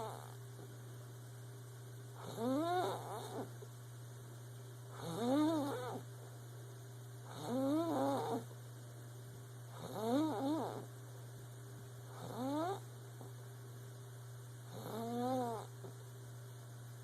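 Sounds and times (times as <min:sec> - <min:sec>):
squeaky snoring: 0:00.0 - 0:00.4, 0:02.2 - 0:03.5, 0:05.0 - 0:06.0, 0:07.3 - 0:08.5, 0:09.8 - 0:10.9, 0:12.1 - 0:12.8, 0:14.7 - 0:15.7
steady low hum: 0:00.0 - 0:17.0.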